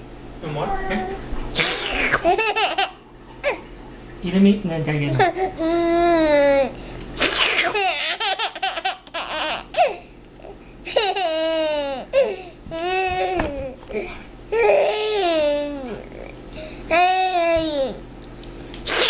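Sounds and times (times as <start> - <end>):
baby laughing and squealing: 1.6 - 3.6, 5.1 - 10.0, 10.9 - 16.1.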